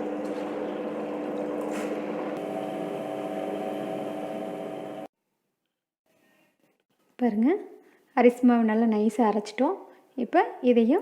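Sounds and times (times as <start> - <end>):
wet grinder motor hum: 0.0 - 5.1.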